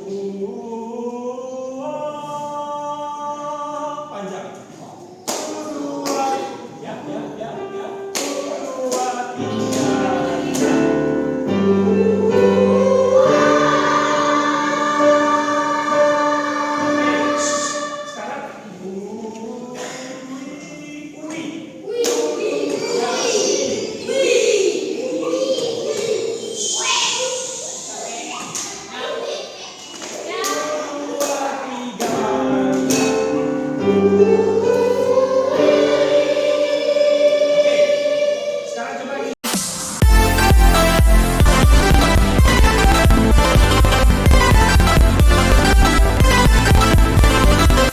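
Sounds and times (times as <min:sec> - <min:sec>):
church choir singing: 0:00.0 - 0:04.7, 0:05.3 - 0:26.6, 0:31.9 - 0:39.3
sharp percussive beats: 0:39.4 - 0:47.8.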